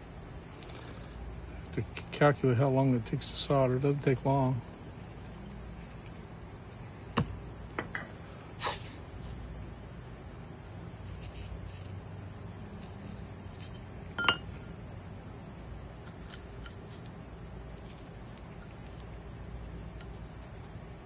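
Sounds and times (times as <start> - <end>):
steady high-pitched hiss: 0.0 - 21.0
ringing clink of glass: 14.2 - 14.5.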